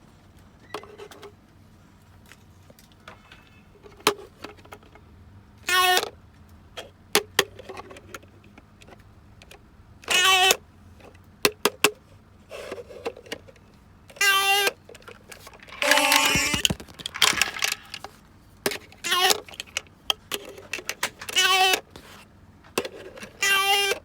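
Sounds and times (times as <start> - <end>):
plastic clicks and knocks: 14.9 - 21.8.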